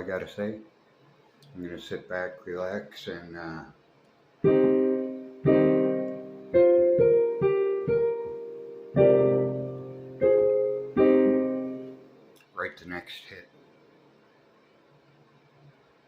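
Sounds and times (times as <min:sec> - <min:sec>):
electric piano chords: 0:04.4 - 0:12.2.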